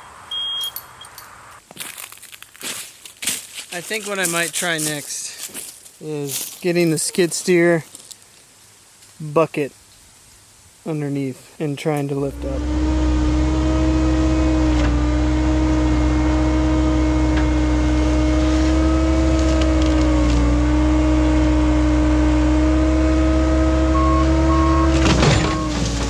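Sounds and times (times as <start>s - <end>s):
skid steer engine running: 12.3s - 26.0s.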